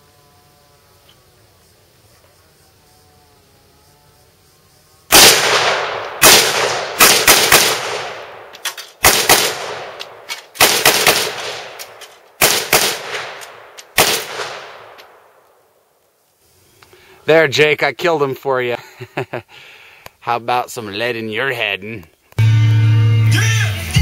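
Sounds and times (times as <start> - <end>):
rifle gunshots with echo: 5.1 - 15.4.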